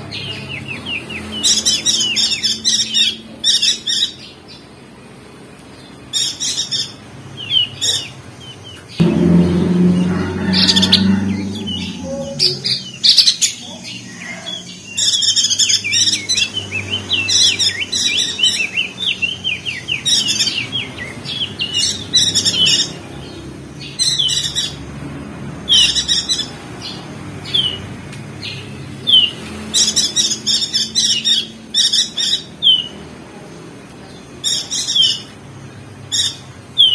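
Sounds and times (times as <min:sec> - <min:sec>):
songbirds twittering: 0:00.0 - 0:25.0, 0:25.6 - 0:36.9
low rumble: 0:09.0 - 0:13.4.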